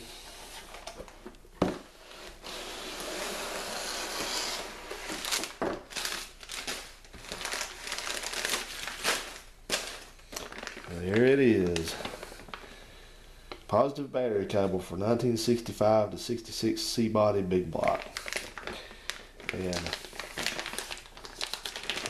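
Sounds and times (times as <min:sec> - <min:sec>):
packaging crinkling and tearing: 0:02.7 - 0:12.7, 0:17.8 - 0:22.0
crackles: 0:17.8 - 0:22.0.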